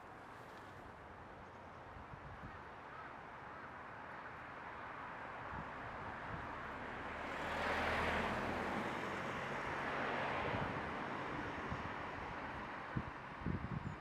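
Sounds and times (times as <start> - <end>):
vehicle passing by: 6.8 - 11.0.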